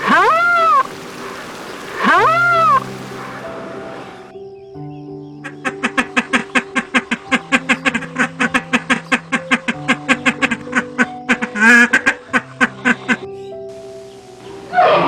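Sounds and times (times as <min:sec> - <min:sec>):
rapid animal calls: 0:00.0 - 0:03.5
drawn-out wavering animal call: 0:00.0 - 0:04.2, 0:14.7 - 0:15.0
soft background music chords: 0:00.0 - 0:15.0.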